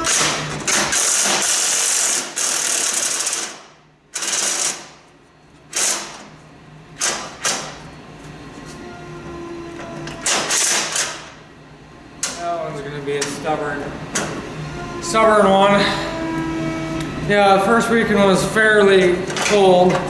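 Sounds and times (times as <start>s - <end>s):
impact wrench hammering: 0.0s - 5.0s.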